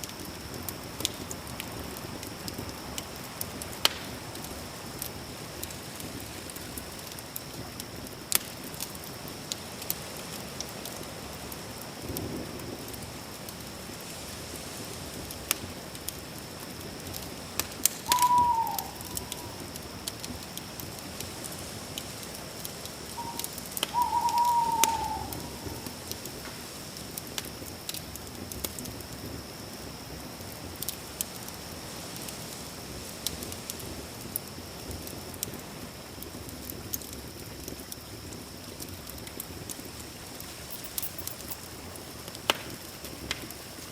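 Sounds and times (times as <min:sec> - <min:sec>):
campfire crackling and popping: 0:00.0 - 0:43.9
steady hiss: 0:00.0 - 0:43.9
bird call sliding downward: 0:18.0 - 0:19.7, 0:23.2 - 0:25.9.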